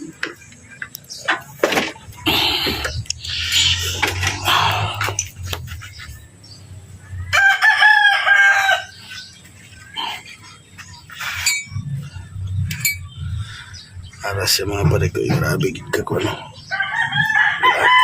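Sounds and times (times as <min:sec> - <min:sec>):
rooster crowing: 0:07.2 - 0:09.0, 0:16.7 - 0:18.0.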